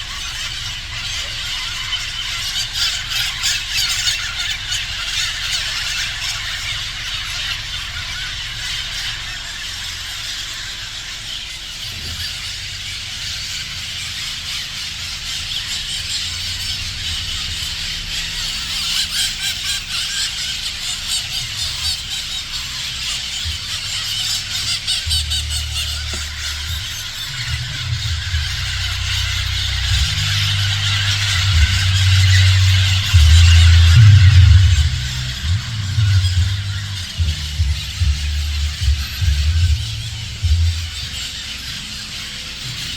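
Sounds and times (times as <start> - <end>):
low rumble: 25.0 - 41.3.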